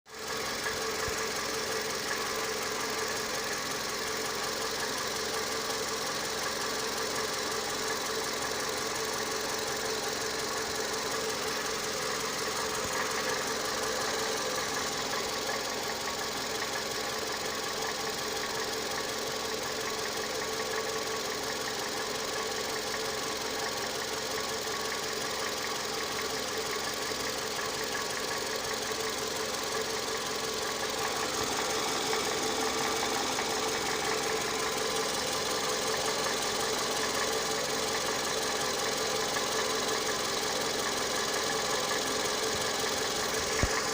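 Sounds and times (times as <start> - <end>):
car engine idling: 0.1 - 43.9.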